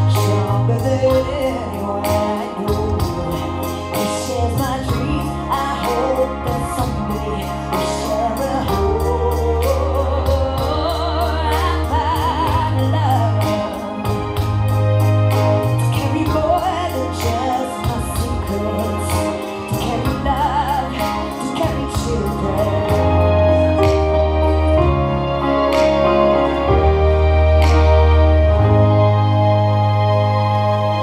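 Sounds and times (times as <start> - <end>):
song with singing and beat: 0.0 - 31.0.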